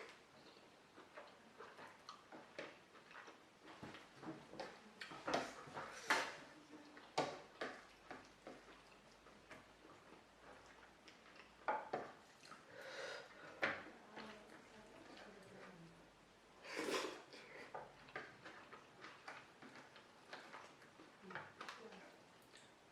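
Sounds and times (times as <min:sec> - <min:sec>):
person chewing: 0:00.0 - 0:06.0, 0:07.6 - 0:13.7, 0:16.7 - 0:22.8.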